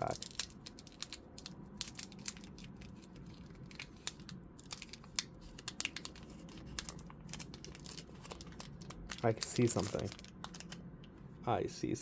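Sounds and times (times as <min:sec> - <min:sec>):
foil wrapper crinkling and tearing: 0:00.0 - 0:10.8.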